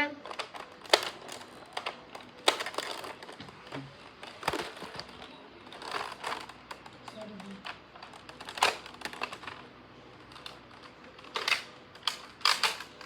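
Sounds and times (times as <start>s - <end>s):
toy blaster plastic clicks: 11.2s - 13.0s.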